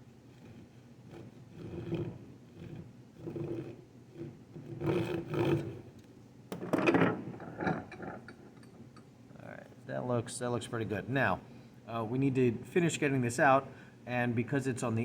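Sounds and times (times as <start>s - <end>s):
hand saw cutting wood: 4.6s - 5.8s.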